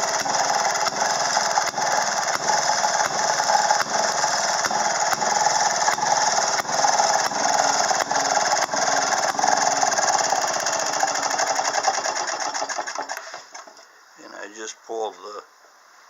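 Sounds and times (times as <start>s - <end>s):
two-stroke engine clattering: 0.0s - 13.8s.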